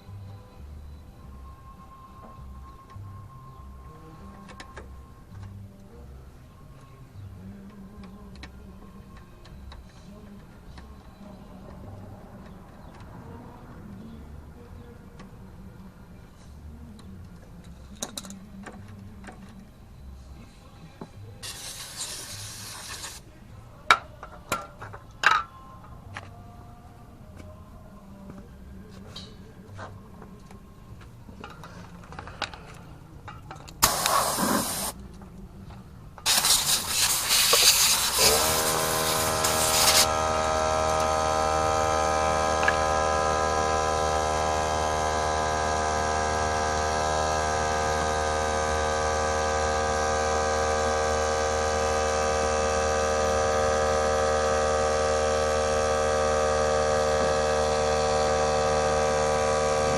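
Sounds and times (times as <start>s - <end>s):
mower engine cranking and running: 36.2s - 59.9s.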